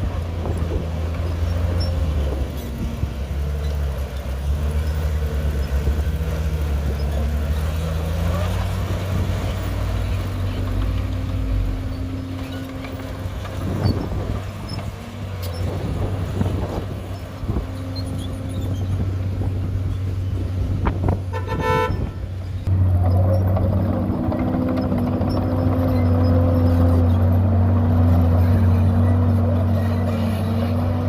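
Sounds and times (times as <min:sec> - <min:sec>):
diesel machinery running: 0:00.0 - 0:31.0
short horn toot: 0:21.3 - 0:22.2.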